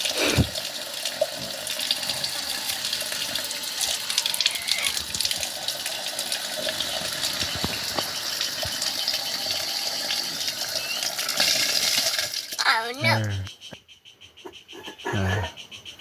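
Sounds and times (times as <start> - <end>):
water running and splashing: 0.0 - 13.3.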